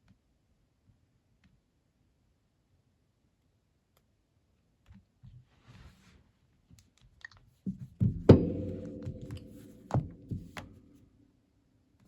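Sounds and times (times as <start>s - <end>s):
hard knock: 8.0s - 10.9s.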